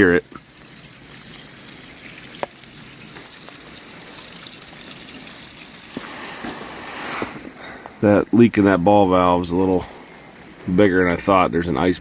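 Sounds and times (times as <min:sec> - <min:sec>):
liquid trickling and splashing: 0:00.0 - 0:12.0.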